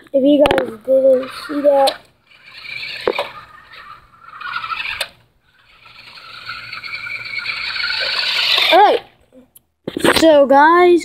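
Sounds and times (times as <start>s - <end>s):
toy car motor whining: 0.4s - 9.2s.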